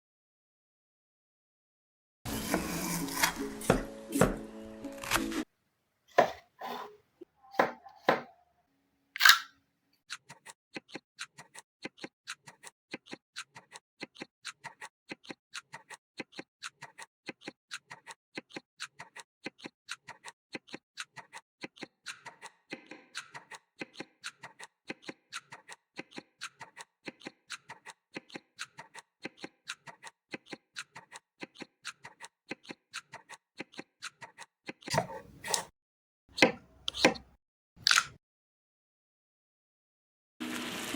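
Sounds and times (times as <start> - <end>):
clock-like ticking: 10.1 - 35.0.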